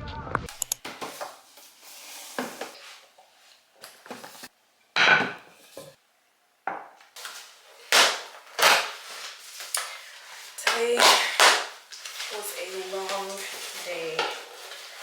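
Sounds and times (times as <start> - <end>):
household objects knocking and clattering: 5.0 - 6.0.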